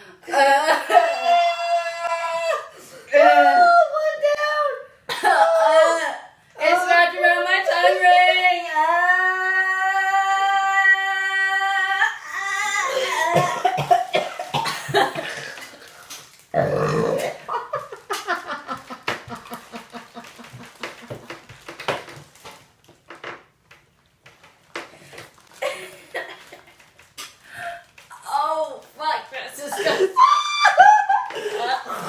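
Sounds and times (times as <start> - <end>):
woman coughing and gagging: 5.1 - 5.7, 12.8 - 15.5.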